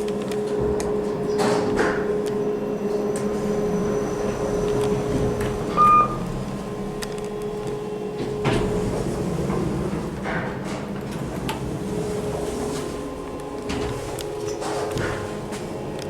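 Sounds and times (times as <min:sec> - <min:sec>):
lift humming: 0:00.0 - 0:16.0
short electronic beep: 0:05.7 - 0:06.2.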